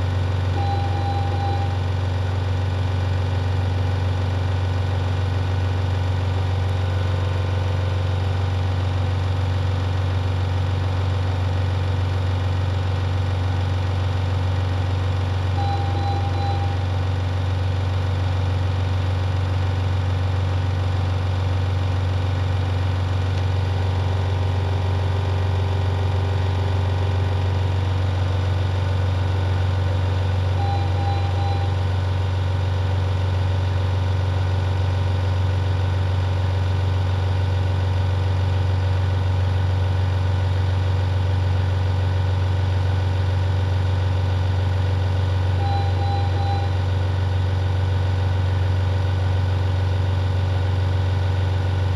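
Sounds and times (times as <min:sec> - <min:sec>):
triple beep alert: 0:00.6 - 0:01.8, 0:15.6 - 0:16.8, 0:30.6 - 0:31.7, 0:45.6 - 0:46.8.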